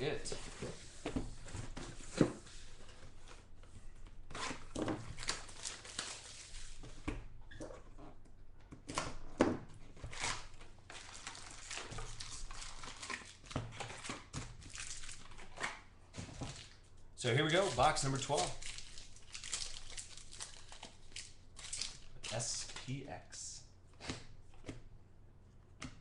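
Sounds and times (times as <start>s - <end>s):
packaging crinkling and tearing: 4.3s - 6.8s, 10.0s - 15.8s, 17.4s - 22.9s.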